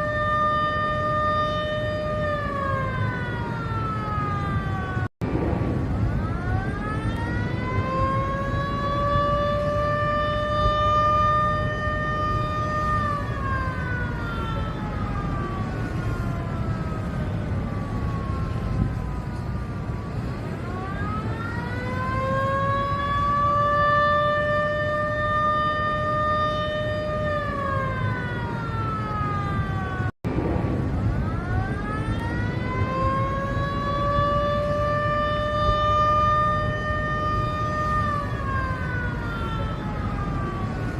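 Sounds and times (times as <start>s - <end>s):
warning siren wailing: 0.0s - 40.9s
steady low rumble: 4.1s - 10.0s, 27.1s - 34.4s.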